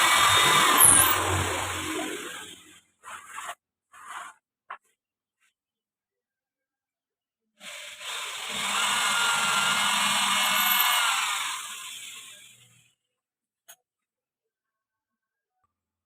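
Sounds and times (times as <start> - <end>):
power tool motor running: 0.0 - 2.6, 7.6 - 12.6.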